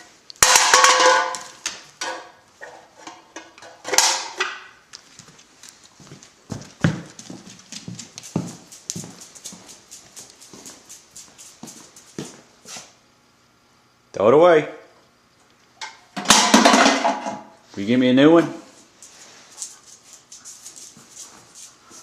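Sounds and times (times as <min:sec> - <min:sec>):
dog claws clicking on hard floor: 0:04.9 - 0:12.4, 0:19.0 - 0:22.0.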